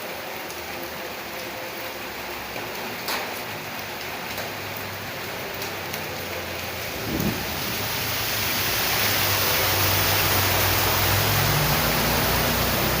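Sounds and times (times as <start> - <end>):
heavy rain hissing: 0.2 - 13.0
low rumble: 6.7 - 9.6.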